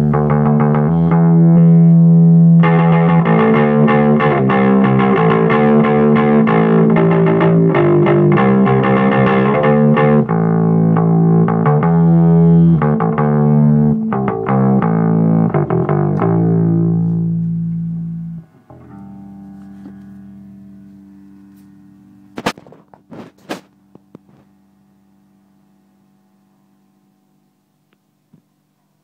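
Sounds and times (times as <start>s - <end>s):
bass guitar notes: 0.0s - 27.8s.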